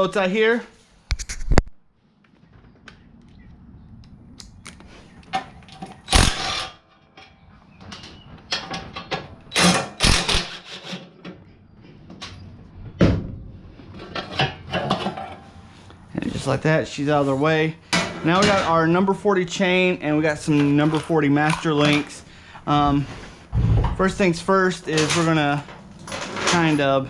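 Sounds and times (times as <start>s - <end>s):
metallic clicks and clanks of tools: 4.4s - 11.4s, 20.4s - 22.2s, 24.8s - 26.9s
loud knocks: 23.5s - 24.0s.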